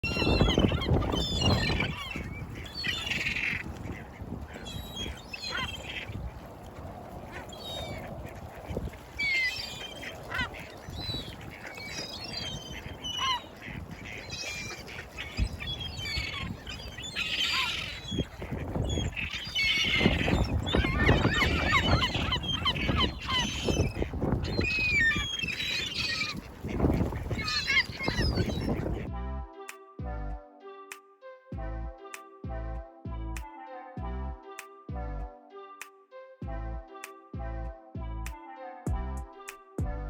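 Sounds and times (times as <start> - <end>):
flock of birds calling: 0.0 - 29.1.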